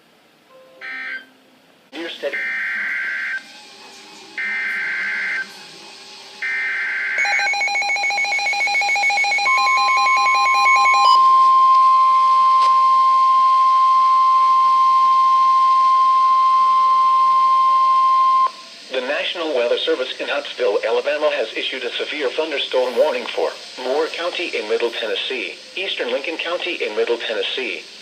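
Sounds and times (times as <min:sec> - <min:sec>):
steady warning alarm tone: 0:00.8 - 0:01.3, 0:02.3 - 0:03.5, 0:04.4 - 0:05.5, 0:06.4 - 0:18.7
rapid electronic beeping: 0:06.4 - 0:11.2.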